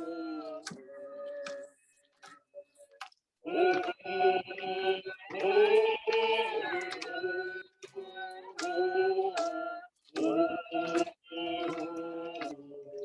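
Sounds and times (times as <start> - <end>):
voices singing high notes: 3.5 - 13.0.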